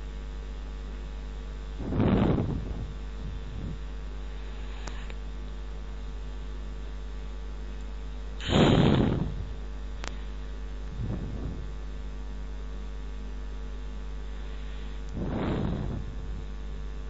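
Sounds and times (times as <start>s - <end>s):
electrical mains hum: 0.0s - 17.0s
short rush of noise: 8.4s - 9.5s.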